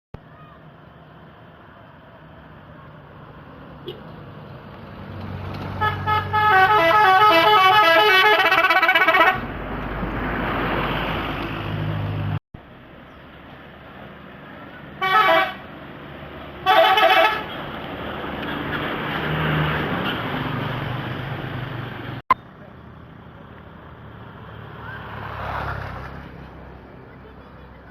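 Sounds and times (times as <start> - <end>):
bus engine running: 0.3 - 27.9
musical bus horn: 5.8 - 9.5, 15.0 - 15.7, 16.6 - 17.6.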